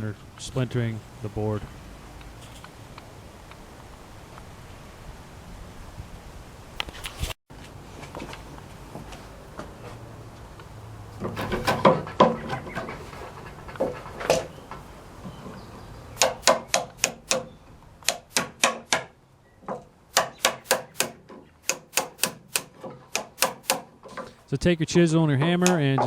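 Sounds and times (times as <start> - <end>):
hammer tapping on wood: 16.2 - 19.1, 19.7 - 23.9.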